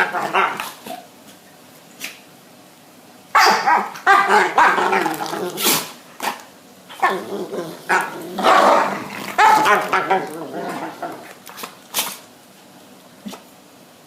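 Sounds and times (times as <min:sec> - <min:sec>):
dogs barking and growling: 0:00.0 - 0:01.2, 0:03.3 - 0:12.2.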